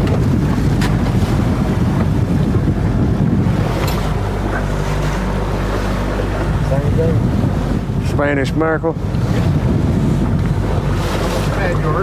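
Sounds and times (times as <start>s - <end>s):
boat motor running: 0.0s - 12.0s
water rushing past hull: 0.0s - 12.0s
wind buffeting microphone: 0.0s - 12.0s.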